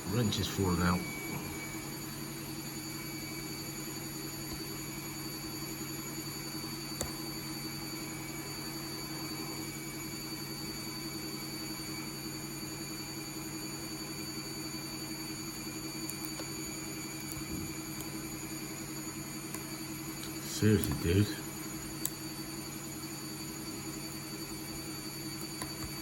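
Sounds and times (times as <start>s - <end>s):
man talking: 0.0s - 1.6s, 20.4s - 21.4s
washing machine humming and whining: 0.0s - 26.0s.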